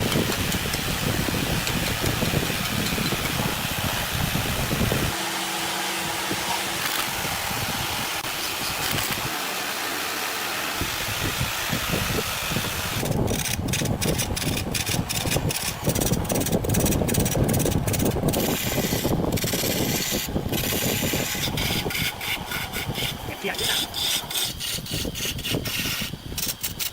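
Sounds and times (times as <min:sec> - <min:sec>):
wood lathe running: 0:00.0 - 0:10.6, 0:13.0 - 0:26.6
turning tool scraping bamboo: 0:13.0 - 0:26.9.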